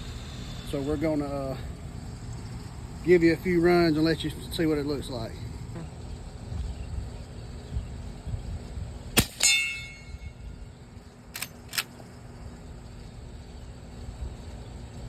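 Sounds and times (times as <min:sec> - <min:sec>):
muffled gunshot: 0:09.2 - 0:09.6
bullet striking steel clang: 0:09.2 - 0:10.4
rifle lever clicks: 0:11.3 - 0:12.0.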